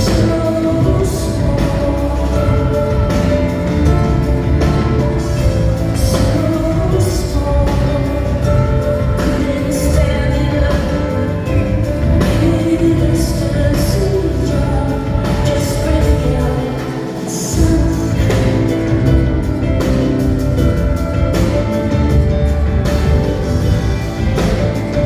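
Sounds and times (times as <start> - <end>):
band with heavy bass: 0.0 - 25.0
woman singing: 0.0 - 25.0.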